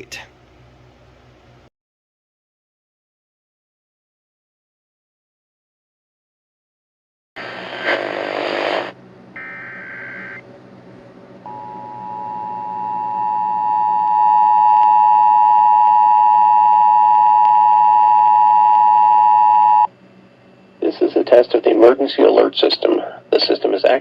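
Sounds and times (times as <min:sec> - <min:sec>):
buzzy digital data noise: 0:07.4 - 0:10.4.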